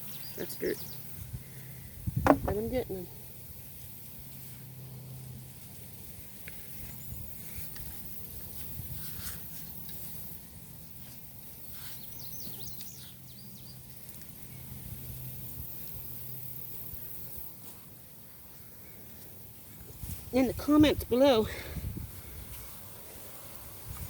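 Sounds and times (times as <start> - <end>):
digging scrapes and rustles: 6.8 - 10.4.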